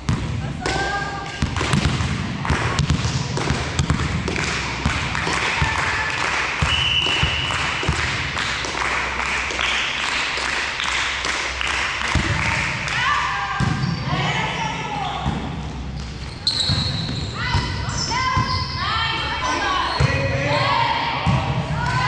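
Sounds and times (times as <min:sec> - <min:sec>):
volleyball hits and thuds: 0:00.0 - 0:05.8, 0:12.1 - 0:12.4
hall-wide hubbub: 0:00.0 - 0:22.0.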